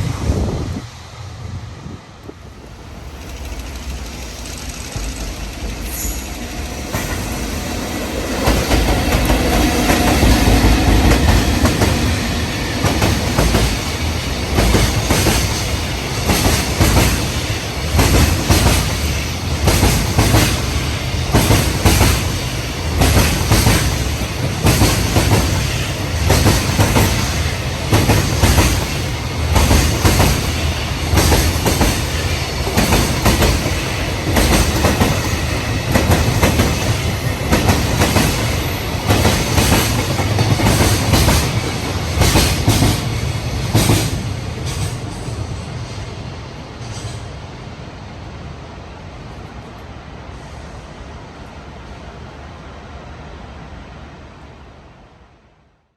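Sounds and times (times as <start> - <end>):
freight train passing: 0.0 - 55.9
wheels clattering over rail joints: 2.3 - 7.7.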